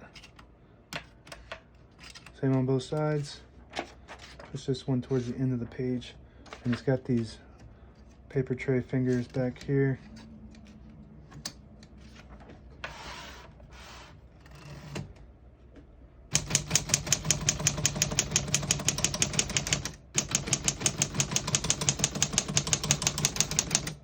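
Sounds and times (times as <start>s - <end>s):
manual typewriter typing: 16.3s - 24.0s.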